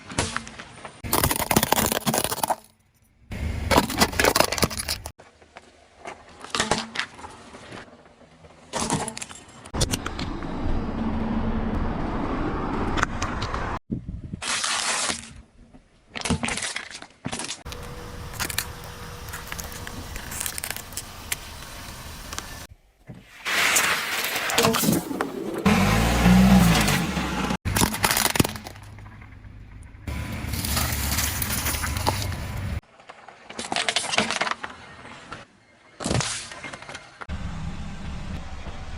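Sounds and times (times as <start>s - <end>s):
car crushing objects: 23.5s - 29.6s.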